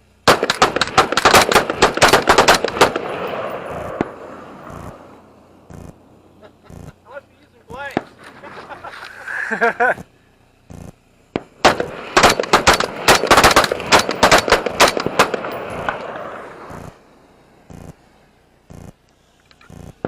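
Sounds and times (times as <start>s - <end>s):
rifles and pistols firing: 0.3s - 6.0s, 10.8s - 17.0s.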